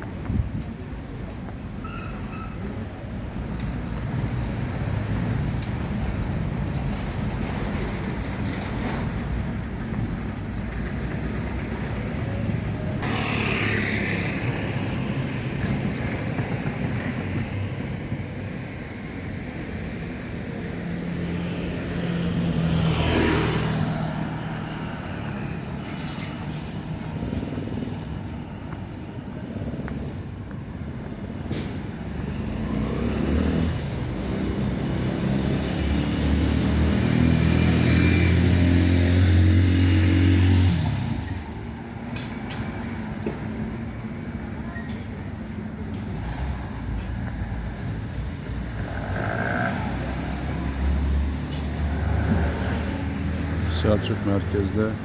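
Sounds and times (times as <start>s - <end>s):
vehicle engine and road noise: 0.0s - 55.0s
vehicle passing: 20.9s - 26.3s, 32.1s - 41.8s.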